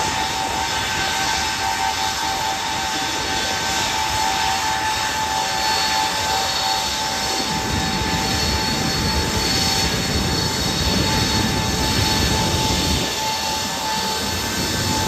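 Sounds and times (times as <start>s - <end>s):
jet engine roaring with whine: 0.0s - 15.0s.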